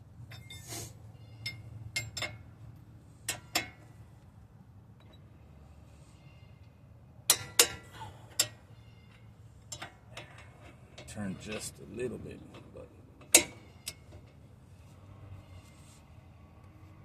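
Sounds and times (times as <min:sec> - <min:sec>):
metal tools clinking on steel: 0:00.3 - 0:00.7, 0:01.3 - 0:02.4, 0:07.3 - 0:11.8.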